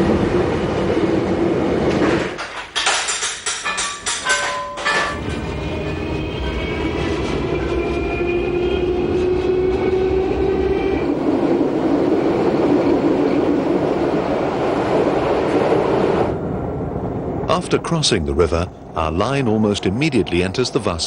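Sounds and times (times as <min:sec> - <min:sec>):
train running on rails: 0:00.0 - 0:21.0
steady tones: 0:03.5 - 0:08.6.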